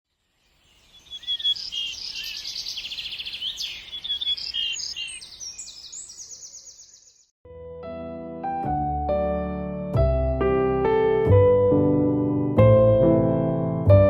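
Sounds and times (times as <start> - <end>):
songbirds singing: 0.1 - 7.3.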